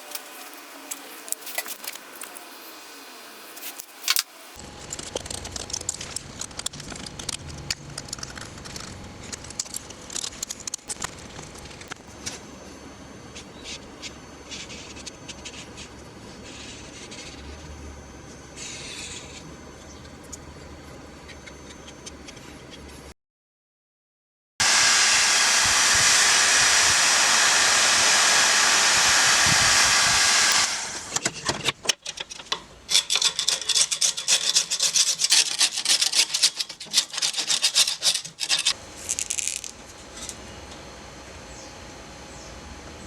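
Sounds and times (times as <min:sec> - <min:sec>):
sanding wood: 0:24.6 - 0:31.1, 0:33.2 - 0:38.8.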